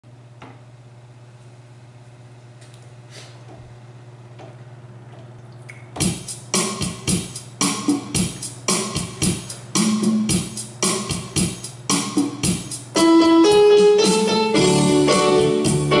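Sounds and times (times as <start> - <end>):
rock band music: 12.0 - 16.0.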